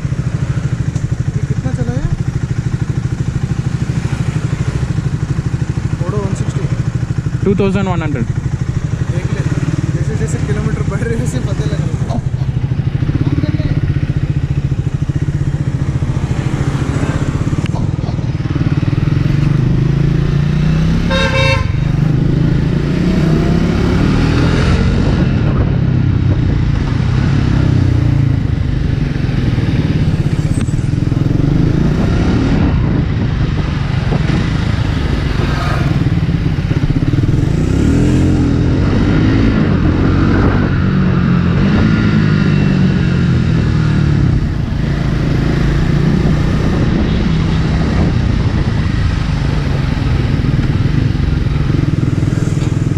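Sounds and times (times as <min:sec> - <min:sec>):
motorcycle engine accelerating: 0:00.0 - 0:52.9
vehicle horn toot: 0:21.0 - 0:21.9.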